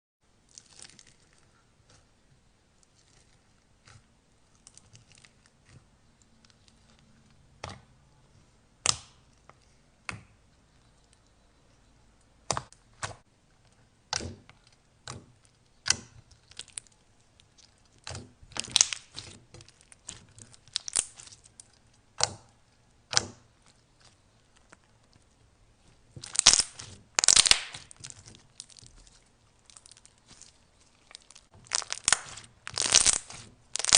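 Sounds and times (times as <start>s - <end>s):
slime clicking and popping: 8.8s - 9.2s, 17.9s - 23.5s, 26.2s - 29.1s, 29.7s - 33.9s.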